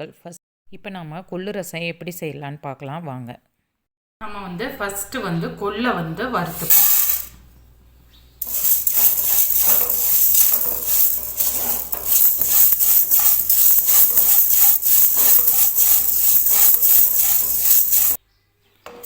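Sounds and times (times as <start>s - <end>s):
seeds rattling in metal pan: 6.6s - 7.4s, 8.4s - 18.2s
steady hiss: 8.4s - 18.2s.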